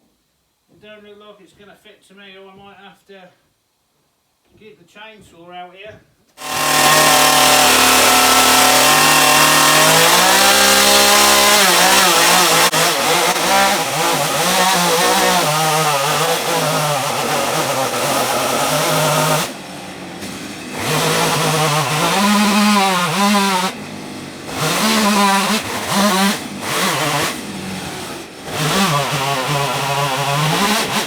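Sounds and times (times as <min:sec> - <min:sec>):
chainsaw running at high revs: 0:06.4 - 0:31.0.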